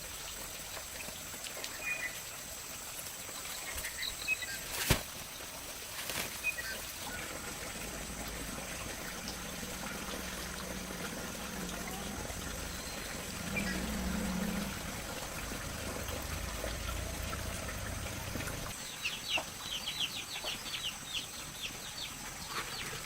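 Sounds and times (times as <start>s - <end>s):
steady hiss: 0.0s - 23.0s
bird chirps: 3.6s - 4.7s.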